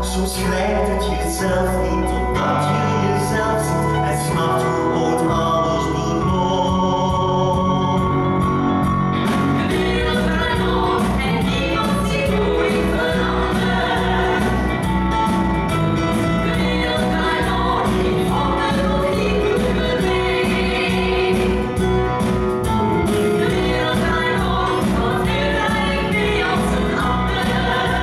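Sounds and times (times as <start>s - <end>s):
band accompaniment: 0.1s - 28.0s
drum beat with percussion: 8.4s - 28.0s
choir singing: 9.3s - 15.5s, 16.2s - 22.3s, 22.9s - 28.0s.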